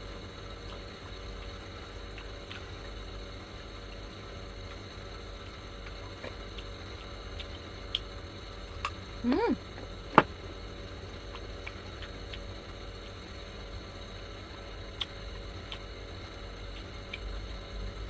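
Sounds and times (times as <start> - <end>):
low steady hum: 0.0 - 18.0
person humming: 9.2 - 9.6.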